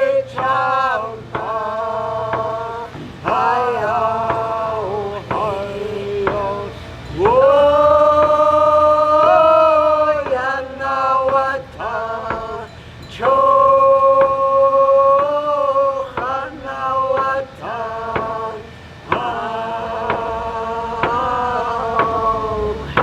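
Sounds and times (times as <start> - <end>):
person chanting a song: 0.0 - 23.0.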